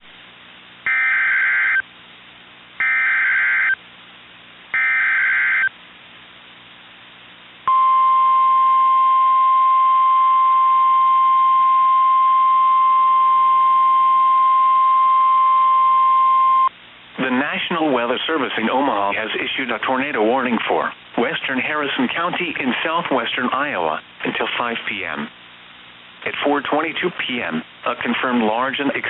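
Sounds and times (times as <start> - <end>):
steady alarm tone: 0.9 - 1.8, 2.8 - 3.8, 4.8 - 5.7
radio hiss and hum: 16.6 - 29.0.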